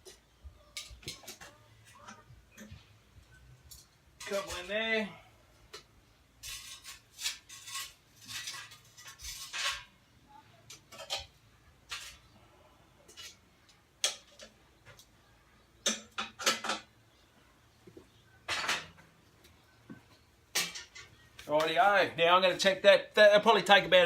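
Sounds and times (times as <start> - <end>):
coals scraping on metal lid: 3.7 - 4.8, 5.7 - 10.0.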